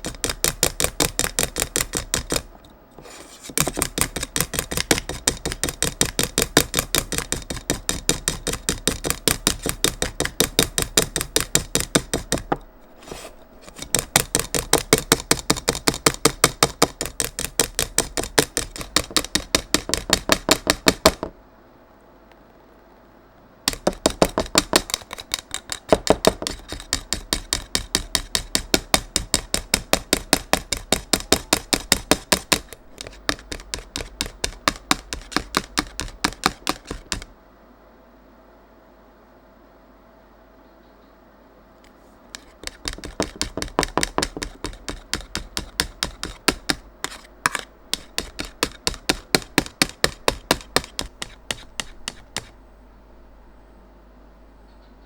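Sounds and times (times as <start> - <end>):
whisk clicking against container: 0.0 - 2.5, 3.5 - 12.6, 13.7 - 21.2, 23.7 - 37.3, 42.4 - 52.6.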